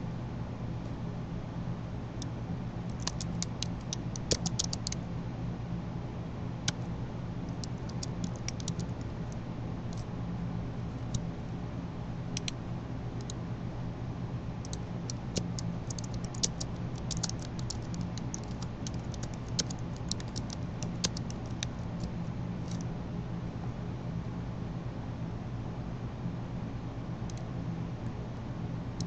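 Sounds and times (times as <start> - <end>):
low electrical hum: 0.0 - 29.0
keyboard and mouse clicking: 2.9 - 5.0, 7.5 - 9.1, 12.4 - 12.6, 14.7 - 22.8.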